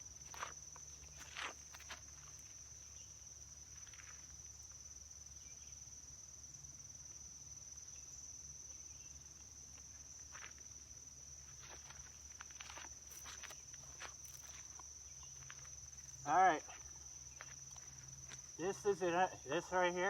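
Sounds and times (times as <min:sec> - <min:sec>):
insects chirring: 0:00.0 - 0:20.0
faint steps or rustles: 0:00.2 - 0:02.8, 0:11.4 - 0:18.6.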